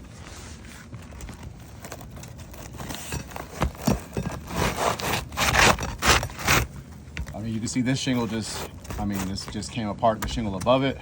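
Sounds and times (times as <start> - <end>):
knocks and tearing shingles: 1.4 - 7.5
metal bar scraping under shingles: 2.0 - 6.7, 8.0 - 9.7.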